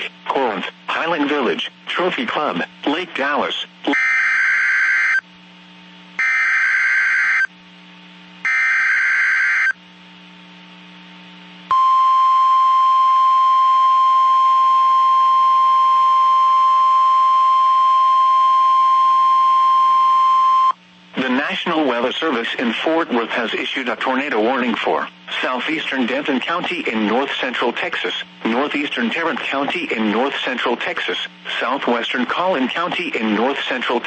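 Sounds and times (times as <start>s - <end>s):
steady warning alarm tone: 3.9s - 5.2s, 6.2s - 7.5s, 8.4s - 9.8s.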